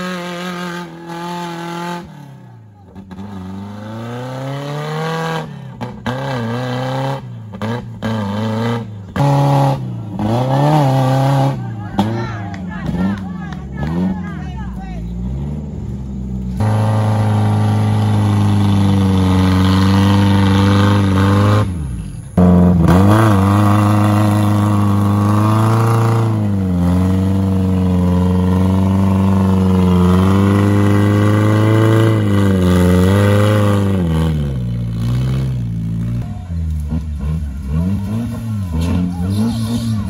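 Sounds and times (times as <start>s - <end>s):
off-road vehicle engine revving: 0.0s - 40.0s.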